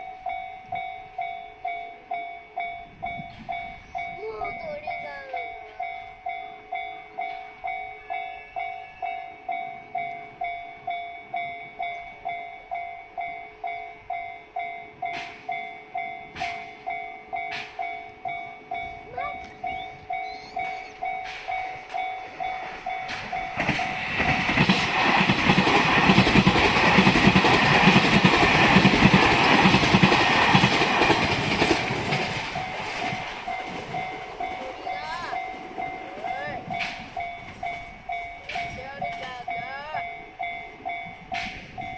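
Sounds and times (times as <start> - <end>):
level crossing bell ringing: 0.0 - 24.0, 32.6 - 41.9
train passing with wheel rumble: 0.0 - 41.9.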